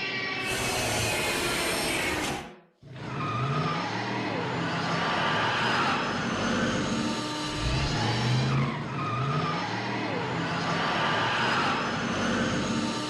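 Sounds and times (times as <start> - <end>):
rushing car-like noise: 2.9 - 13.0
gliding tones: 7.4 - 8.8
low hum: 7.5 - 8.8.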